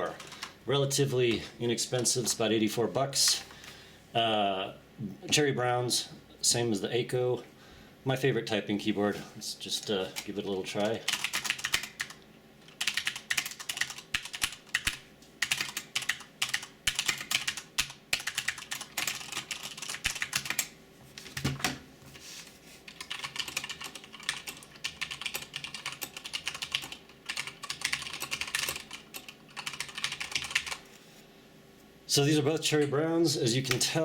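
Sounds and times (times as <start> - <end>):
mechanical keyboard typing: 10.2 - 20.7, 22.9 - 30.8.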